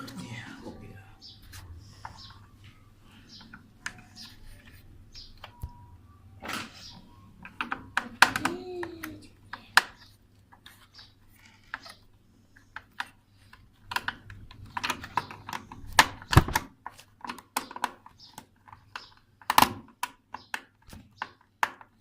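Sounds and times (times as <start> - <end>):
computer parts clicking and tapping: 12.7 - 22.0.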